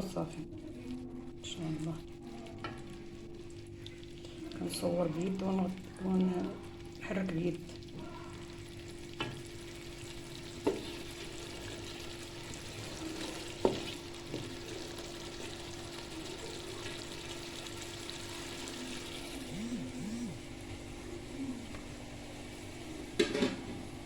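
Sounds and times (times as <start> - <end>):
sauce sizzling in a frying pan: 1.6 - 19.6.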